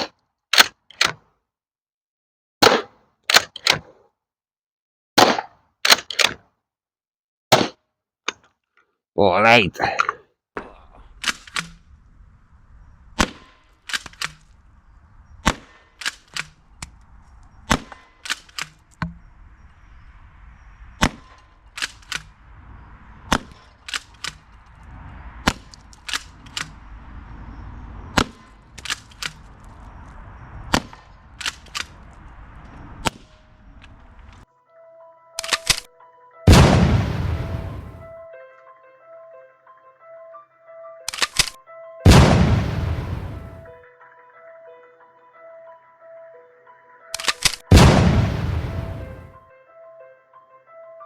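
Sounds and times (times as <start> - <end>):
shotgun shots: 5.2 - 6.4, 13.2 - 14.4, 36.5 - 38.0, 41.1 - 43.7, 47.2 - 49.4.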